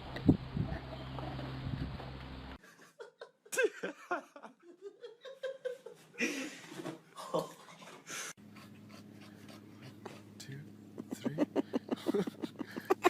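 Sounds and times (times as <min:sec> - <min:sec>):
person laughing and giggling: 0:02.6 - 0:07.8, 0:11.0 - 0:13.0.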